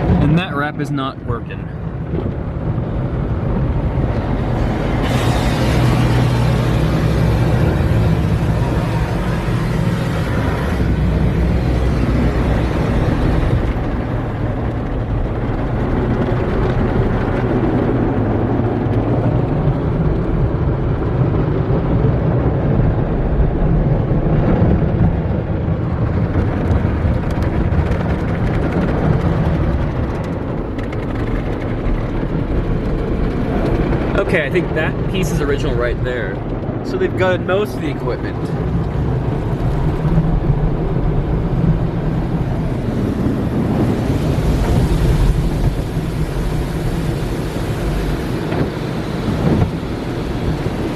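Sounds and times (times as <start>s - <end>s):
low rumble: 0.0s - 50.9s
brushes and water spray on car: 4.6s - 13.8s.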